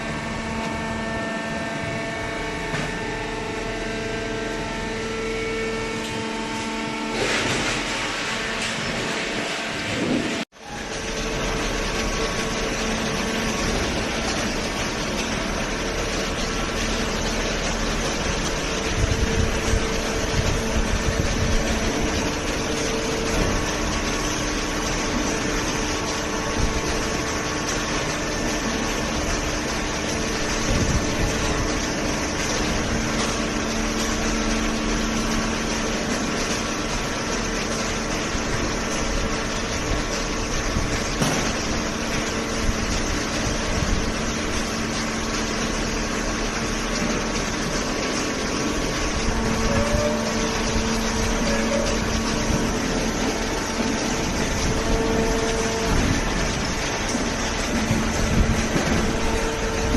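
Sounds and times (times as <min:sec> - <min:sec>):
baler machine hum: 0:00.0 - 0:59.9.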